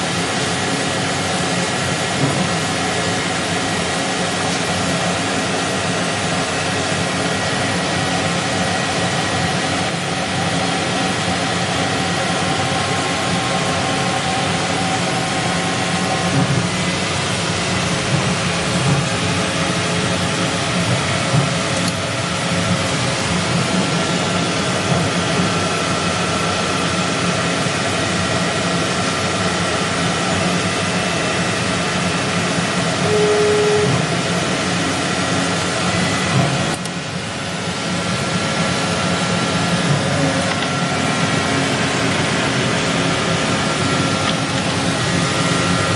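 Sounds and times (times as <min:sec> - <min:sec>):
lathe machine hum and hiss: 0:00.0 - 0:45.9
whining machine tones: 0:32.7 - 0:36.8
short clear tone: 0:33.0 - 0:34.1.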